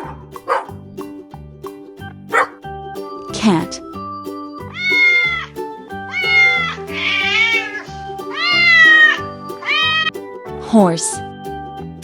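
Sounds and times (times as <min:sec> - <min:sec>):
background music: 0:00.0 - 0:12.0
cat meowing: 0:04.7 - 0:05.5, 0:06.1 - 0:10.1.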